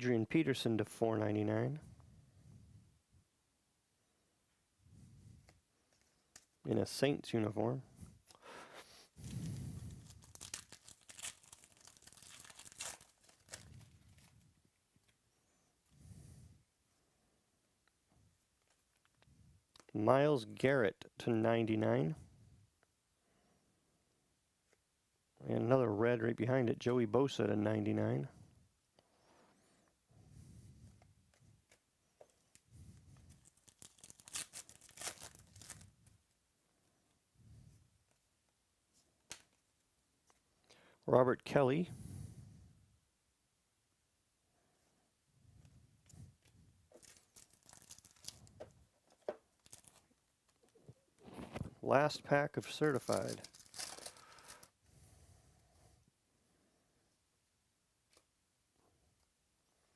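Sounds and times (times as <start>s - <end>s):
wrapper crinkling and tearing: 9.4s - 14.4s, 33.2s - 36.1s, 46.9s - 51.5s, 52.7s - 54.7s.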